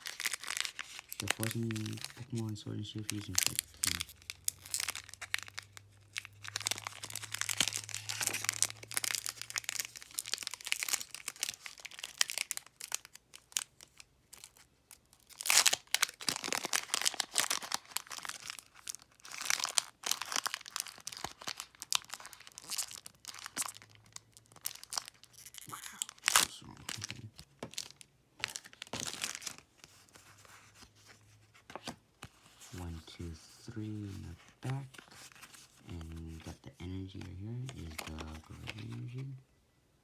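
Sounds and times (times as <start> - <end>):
foil wrapper tearing and crinkling: 0.0 - 30.4.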